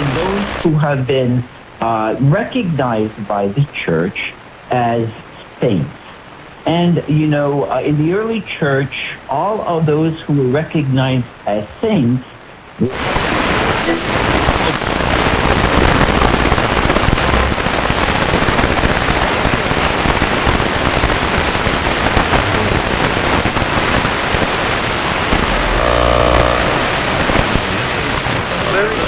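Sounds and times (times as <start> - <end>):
radio static hiss with crackle: 0.0 - 29.0
short buzzing tone: 25.5 - 27.6.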